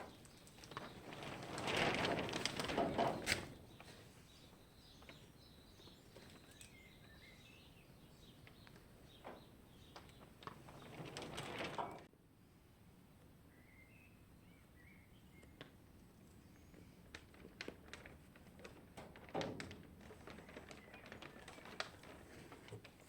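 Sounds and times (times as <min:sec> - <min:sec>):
rustling handling noise: 0:00.0 - 0:12.1, 0:16.4 - 0:23.0
faint bird chirps: 0:13.5 - 0:15.6.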